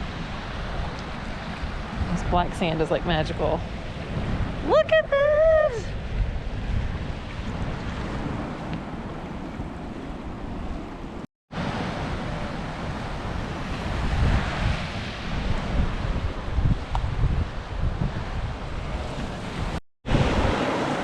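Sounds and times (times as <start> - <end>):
wind buffeting microphone: 0.0 - 21.0
surf breaking on beach: 11.5 - 21.0.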